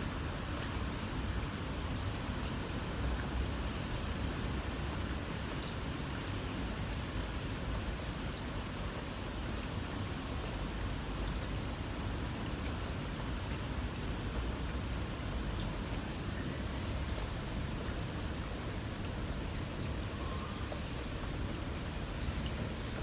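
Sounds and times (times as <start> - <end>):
faint drip ticks: 0.0 - 23.0
light rain hissing: 10.3 - 23.0.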